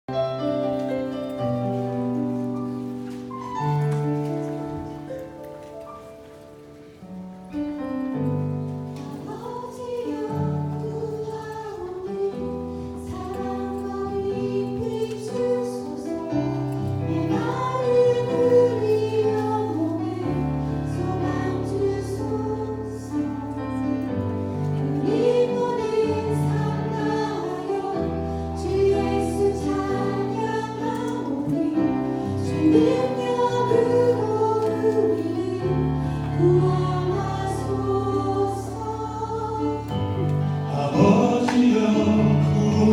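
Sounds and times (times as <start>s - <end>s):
group singing worship song: 8.9s - 42.9s.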